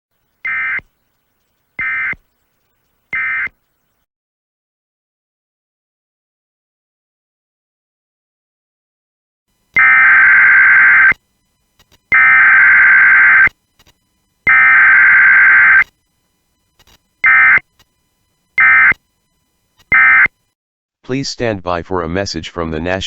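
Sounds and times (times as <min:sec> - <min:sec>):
raspy digital tone bursts: 0:00.4 - 0:00.8, 0:01.8 - 0:02.2, 0:03.2 - 0:03.5, 0:09.8 - 0:11.2, 0:12.1 - 0:13.5, 0:14.5 - 0:15.9, 0:17.1 - 0:17.7, 0:18.5 - 0:20.4.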